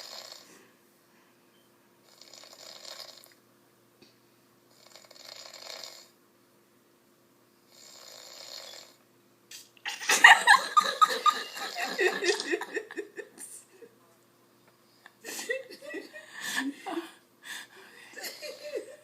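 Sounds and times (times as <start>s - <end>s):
man snoring: 0.0s - 0.5s, 2.1s - 3.3s, 4.7s - 6.2s, 7.7s - 9.0s.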